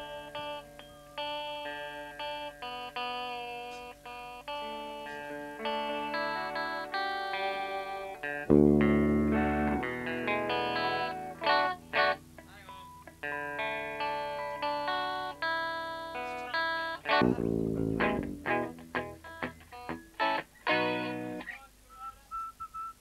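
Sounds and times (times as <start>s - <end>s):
guitar plucked notes: 0.0s - 21.6s
loud low guitar chord: 4.5s - 15.4s, 17.1s - 21.4s.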